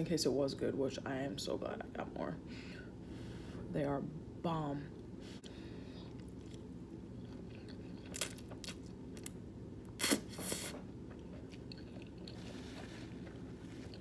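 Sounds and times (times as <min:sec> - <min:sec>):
person chewing food: 0:05.4 - 0:14.0.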